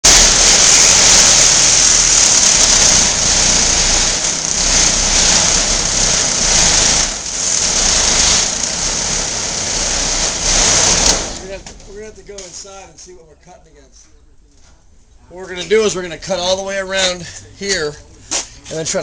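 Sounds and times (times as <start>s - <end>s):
power saw cutting: 0.0s - 12.6s.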